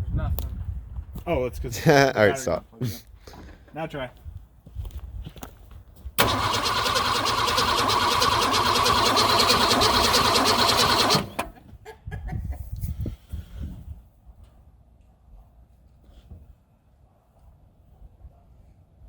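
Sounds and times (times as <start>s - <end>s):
starter motor cranking engine: 6.2s - 11.6s.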